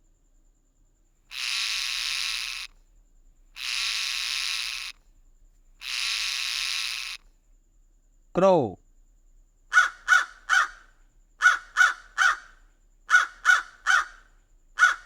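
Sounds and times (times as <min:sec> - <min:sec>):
parrot screeching: 0:01.3 - 0:02.7, 0:03.6 - 0:04.9, 0:05.8 - 0:07.2.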